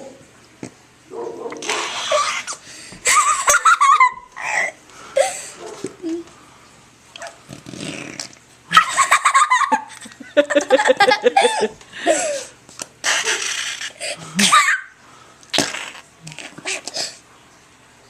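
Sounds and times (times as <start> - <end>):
child giggling: 2.1 - 5.3, 8.7 - 12.5, 14.4 - 14.9.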